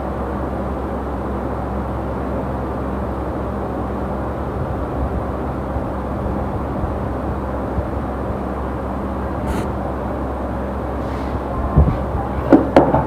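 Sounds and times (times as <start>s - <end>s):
steady mechanical hum: 0.0s - 13.0s
even rushing noise: 9.4s - 9.9s.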